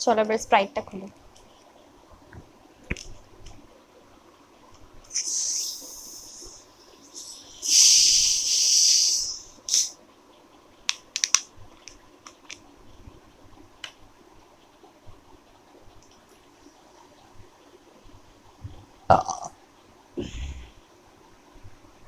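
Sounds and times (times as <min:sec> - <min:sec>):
bottle fizz hissing: 0:05.1 - 0:10.0
sharp clicks: 0:10.9 - 0:12.6.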